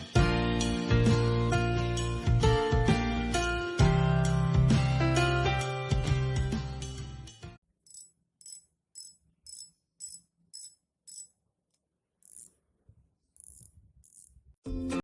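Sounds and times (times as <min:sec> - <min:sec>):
fishing reel rattling: 0:07.9 - 0:11.3, 0:12.2 - 0:12.6, 0:13.4 - 0:14.4.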